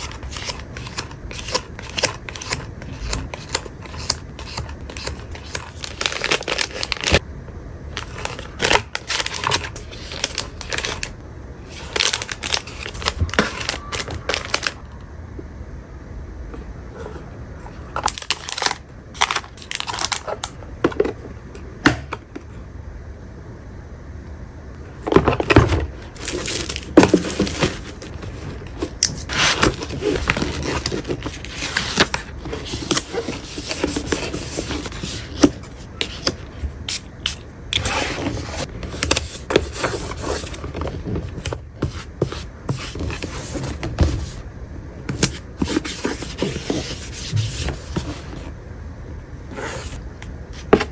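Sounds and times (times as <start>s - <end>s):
scraping and rustling of items: 24.9s - 44.4s, 45.1s - 48.6s.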